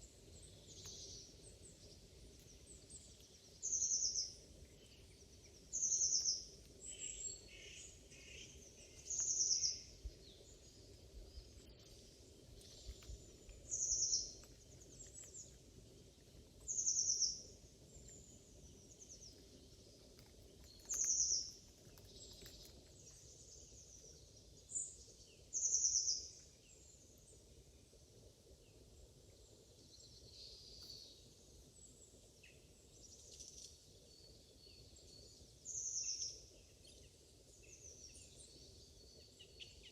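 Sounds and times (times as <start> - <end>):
faint bird chirps: 28.6 - 39.9.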